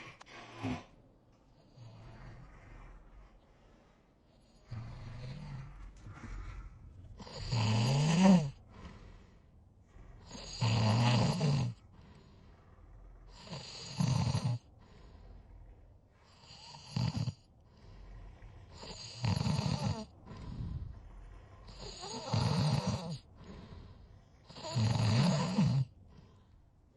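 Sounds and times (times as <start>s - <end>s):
person snoring: 0.0s - 1.0s, 4.4s - 9.4s, 10.1s - 11.9s, 13.2s - 14.9s, 16.2s - 26.6s
quiet breaths: 0.0s - 26.9s.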